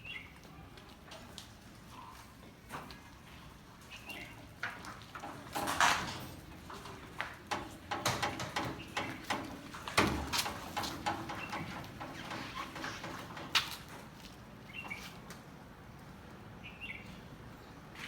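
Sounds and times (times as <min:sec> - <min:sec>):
knocks and creaks of pushed jeep: 0:04.1 - 0:15.2.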